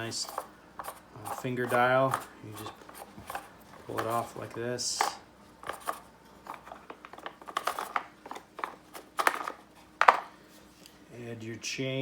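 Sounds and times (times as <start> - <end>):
chainsaw parts clicking and rattling: 1.7 - 10.3.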